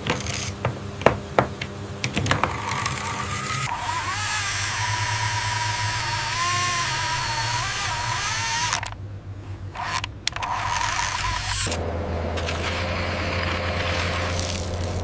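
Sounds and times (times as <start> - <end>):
small motor whirring: 2.5 - 9.0, 9.6 - 15.0.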